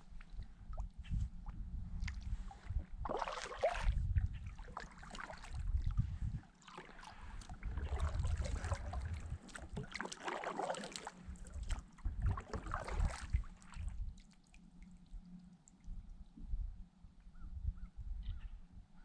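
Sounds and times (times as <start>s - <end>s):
water splashing around a kayak: 0.0s - 16.1s
faint water drips: 6.6s - 16.4s.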